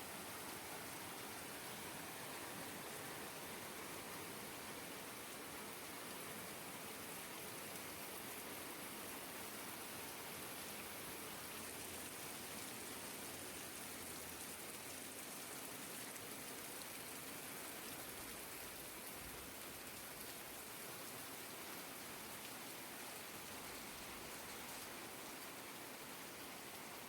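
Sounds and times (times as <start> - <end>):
rain falling steadily: 0.0 - 27.0.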